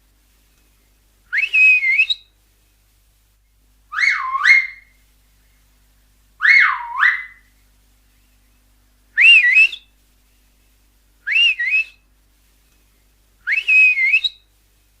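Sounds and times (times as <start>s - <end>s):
high finger whistles: 1.3s - 2.3s, 3.9s - 5.0s, 6.4s - 7.5s, 9.2s - 9.9s, 11.3s - 12.0s, 13.4s - 14.4s.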